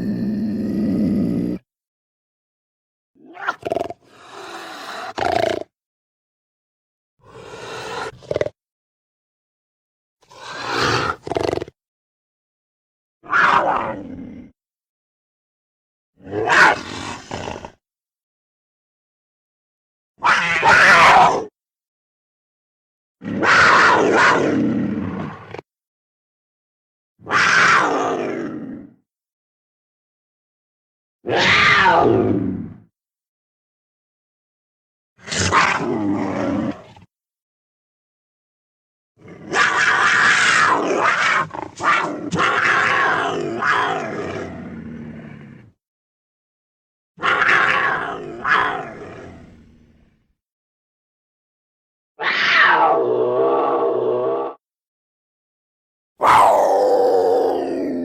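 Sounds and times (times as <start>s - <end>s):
big cat roaring: 0.0s - 1.6s, 3.2s - 5.7s, 7.3s - 8.6s, 10.3s - 11.8s, 13.2s - 14.6s, 23.2s - 25.6s, 27.2s - 29.0s, 31.3s - 32.8s, 35.2s - 37.1s, 39.2s - 45.8s, 47.2s - 50.1s, 52.2s - 54.6s, 56.2s - 58.0s
big cat vocalization: 0.0s - 1.6s, 3.2s - 5.7s, 7.3s - 8.6s, 10.3s - 11.8s, 56.2s - 58.0s.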